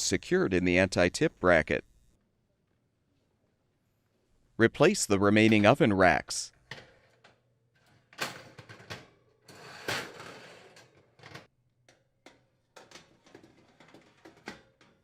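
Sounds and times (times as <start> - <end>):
oven rack scraping: 9.5 - 11.5.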